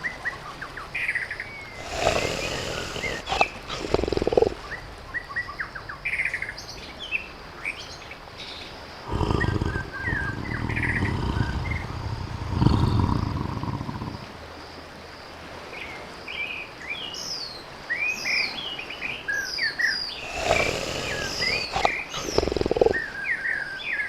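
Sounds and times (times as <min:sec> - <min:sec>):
birds chirping: 0:01.1 - 0:06.4, 0:07.8 - 0:14.4, 0:19.8 - 0:23.2
tiger growling: 0:01.7 - 0:04.6, 0:09.0 - 0:14.4, 0:20.2 - 0:23.0.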